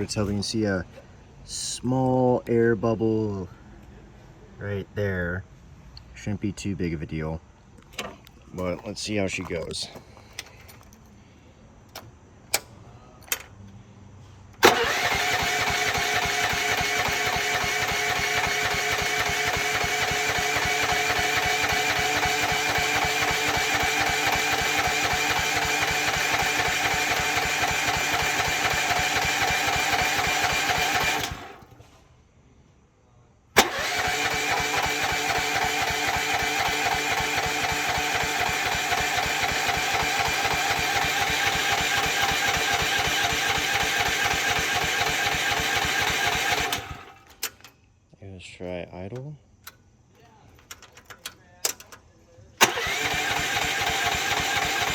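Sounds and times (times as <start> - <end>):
engine clicks: 14.6 - 31.8, 33.6 - 47.8, 50.5 - 54.9
small gasoline engine running: 14.6 - 31.8, 33.6 - 47.3, 52.6 - 54.9.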